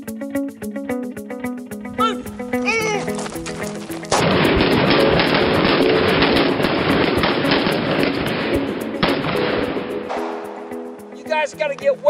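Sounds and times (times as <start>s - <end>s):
rapid handgun shots: 4.1s - 10.7s.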